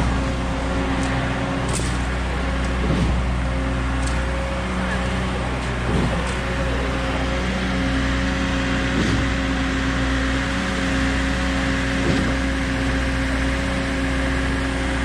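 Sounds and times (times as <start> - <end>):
pump knocking: 0.0 - 4.6, 5.2 - 6.9, 8.7 - 10.1, 11.8 - 12.9
pump truck engine hum: 0.0 - 15.0.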